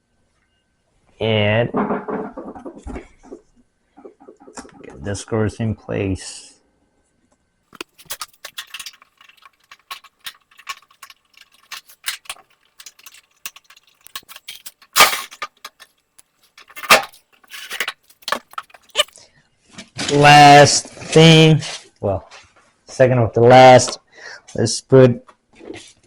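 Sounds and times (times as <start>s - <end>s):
screws clinking on sheet metal: 7.8s - 15.9s, 16.5s - 19.1s.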